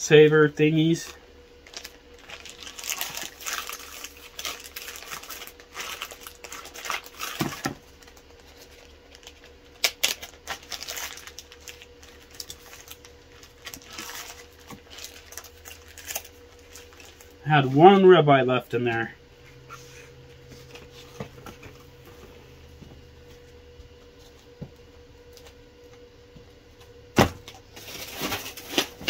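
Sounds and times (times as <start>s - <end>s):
plastic wrap crinkling: 1.6s - 18.0s, 27.4s - 29.0s.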